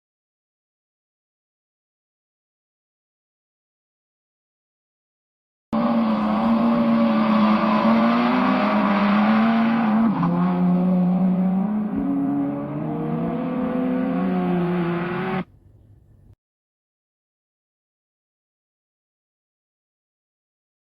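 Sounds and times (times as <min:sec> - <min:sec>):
racing car engine: 0:05.8 - 0:15.6.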